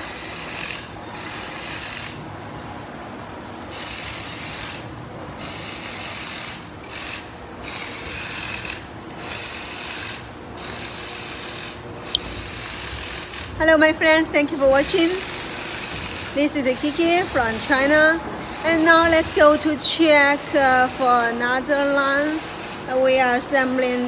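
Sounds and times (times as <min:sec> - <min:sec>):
hissing rasping bursts: 0:14.8 - 0:19.6.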